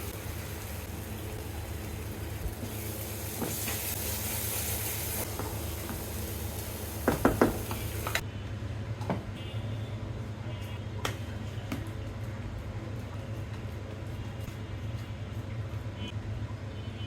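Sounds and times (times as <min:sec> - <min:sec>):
food sizzling in a pan: 0:00.0 - 0:08.2
utensil knocking on pan: 0:07.0 - 0:08.2.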